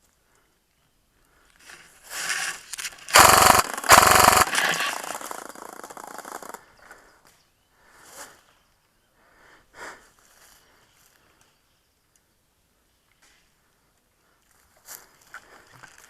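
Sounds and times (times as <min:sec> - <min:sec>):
airsoft gun full-auto bursts: 0:02.2 - 0:06.6.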